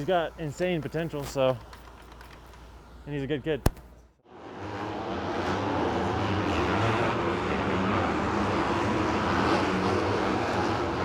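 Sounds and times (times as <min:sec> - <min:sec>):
dirt bike engines running: 0:04.5 - 0:11.0.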